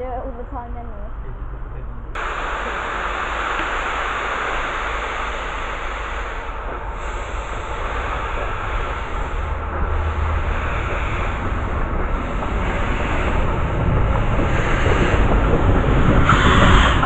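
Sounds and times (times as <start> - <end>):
moving train rumble and hiss: 0.0 - 17.0
wind on microphone: 0.0 - 17.0.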